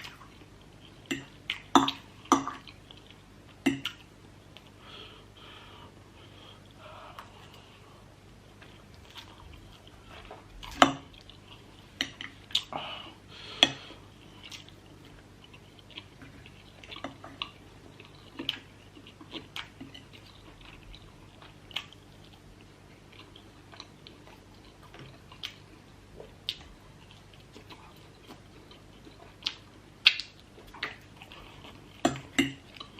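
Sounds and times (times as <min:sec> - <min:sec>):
mouth clicks and smacks: 0:12.0 - 0:12.8, 0:27.8 - 0:31.1.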